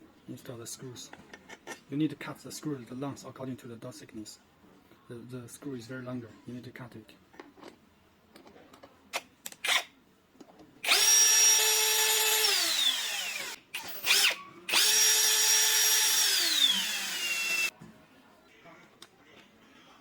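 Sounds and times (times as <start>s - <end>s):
handheld power tool running: 10.8s - 17.7s.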